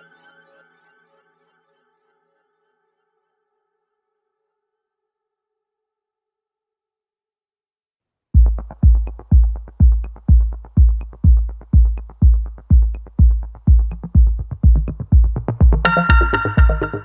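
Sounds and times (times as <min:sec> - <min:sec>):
deep kick drum beat: 0:08.4 - 0:17.0.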